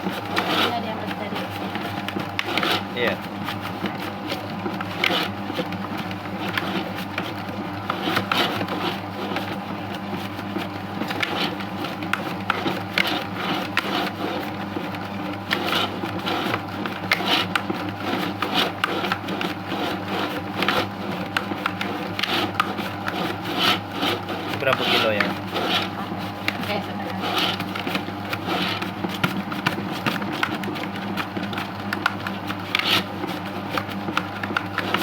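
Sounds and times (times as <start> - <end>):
electric motor hum: 10.8 - 35.0.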